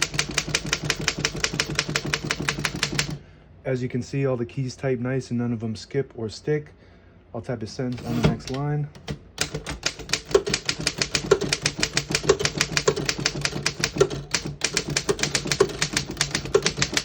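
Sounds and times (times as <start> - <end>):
manual typewriter typing: 0.0 - 3.2, 8.0 - 17.0.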